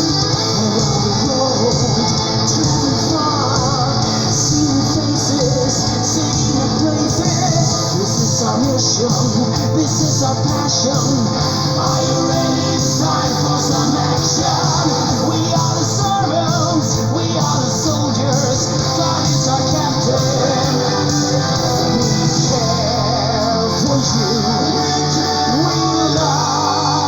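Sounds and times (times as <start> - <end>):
electric guitars: 0.0 - 27.0
metal song with sung vocals: 0.0 - 27.0.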